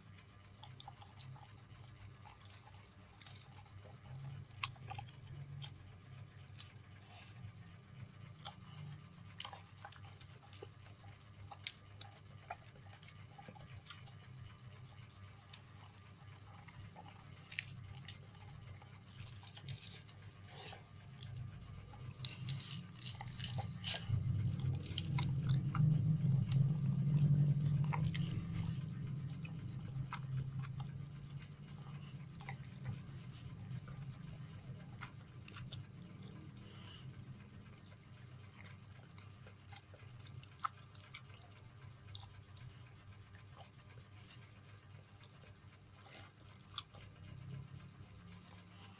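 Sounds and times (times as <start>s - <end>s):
dog chewing and crunching: 0.0s - 48.9s
low rumble: 12.4s - 40.4s.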